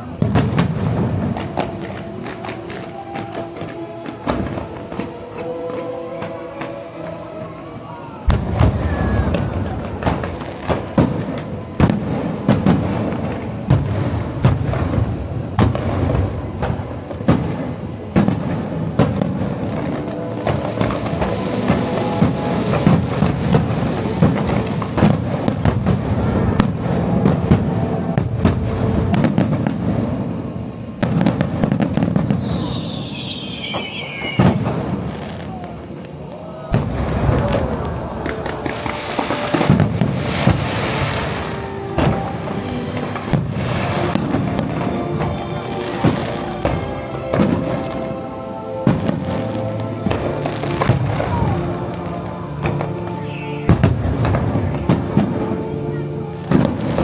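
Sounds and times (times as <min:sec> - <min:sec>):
fireworks boom: 0:00.0 - 0:06.3, 0:08.2 - 0:52.0, 0:52.6 - 0:55.9
sharp fireworks bangs: 0:00.0 - 0:57.0
continuous rumble: 0:07.6 - 0:32.3.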